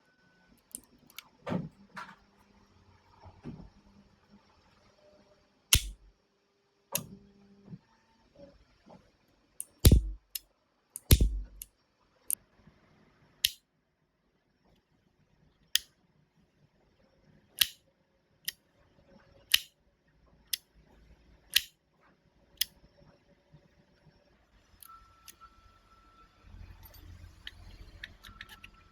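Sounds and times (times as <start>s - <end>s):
airsoft revolver snaps: 5.8s - 6.1s, 9.6s - 10.4s, 11.0s - 11.7s, 17.6s - 17.8s, 21.5s - 21.7s
mechanical clicks: 5.8s - 6.1s, 9.6s - 10.4s, 11.0s - 11.7s, 17.6s - 17.8s
low thump: 9.9s - 10.2s, 11.1s - 11.6s.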